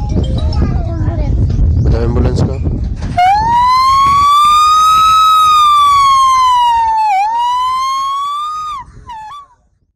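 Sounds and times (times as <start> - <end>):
boy imitating siren: 3.2 - 9.4.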